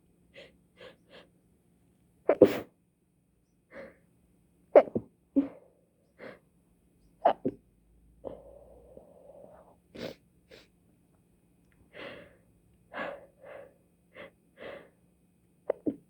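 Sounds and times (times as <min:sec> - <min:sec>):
person sneezing: 0:02.3 - 0:02.7.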